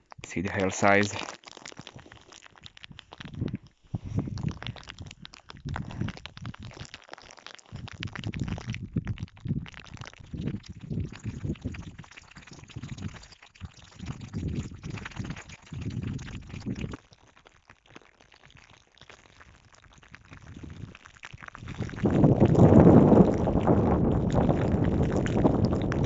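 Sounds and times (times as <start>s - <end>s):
low rumbling in gusts: 21.6s - 26.0s.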